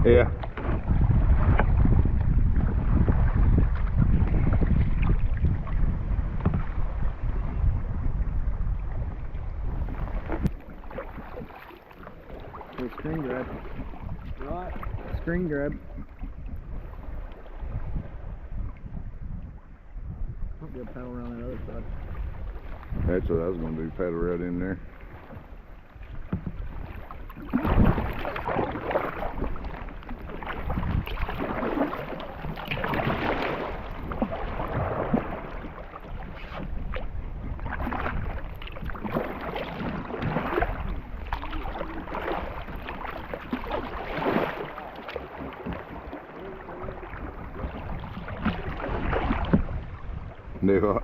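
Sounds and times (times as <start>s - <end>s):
kayak paddle splashing water: 0.0s - 7.7s, 8.4s - 18.9s, 21.6s - 50.6s.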